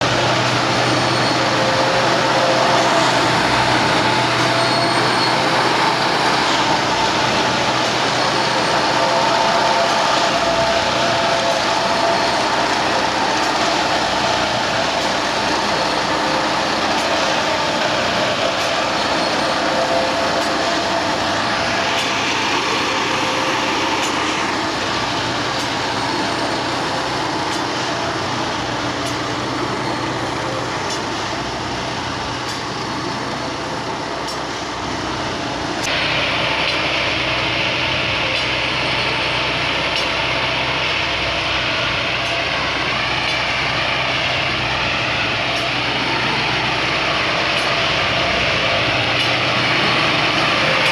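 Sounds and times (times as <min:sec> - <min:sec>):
track maintenance machines running: 0:00.0 - 0:50.9.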